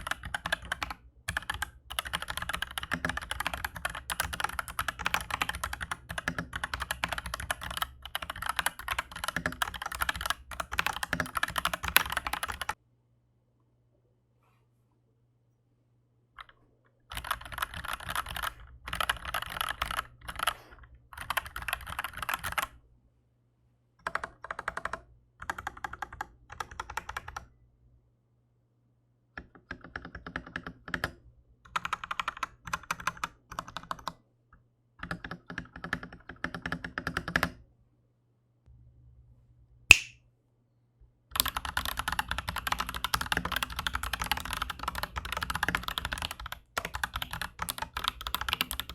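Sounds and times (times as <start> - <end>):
sharp loud click: 39.9 - 40.2.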